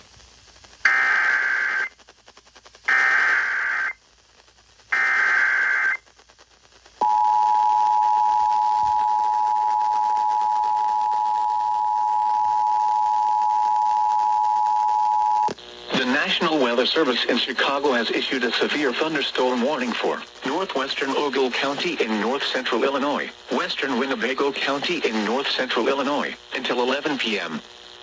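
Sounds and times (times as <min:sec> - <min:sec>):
digital data bursts: 0:00.9 - 0:02.0, 0:02.8 - 0:04.0, 0:04.9 - 0:06.0, 0:15.7 - 0:28.0
two-tone attention signal: 0:07.0 - 0:15.5.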